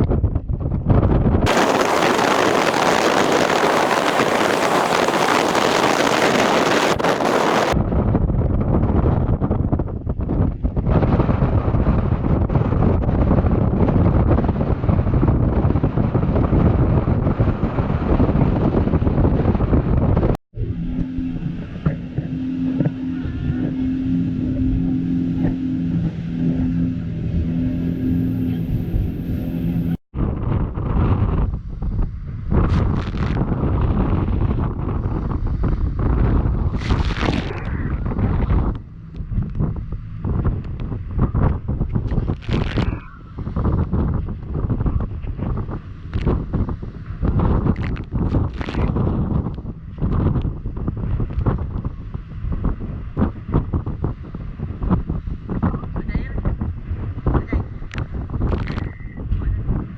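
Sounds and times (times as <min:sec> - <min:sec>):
wind buffeting microphone: 0:00.0 - 0:59.9
loud even rushing hiss: 0:01.5 - 0:07.8
speedboat running: 0:01.5 - 0:07.8, 0:09.9 - 0:30.0, 0:31.3 - 0:59.9.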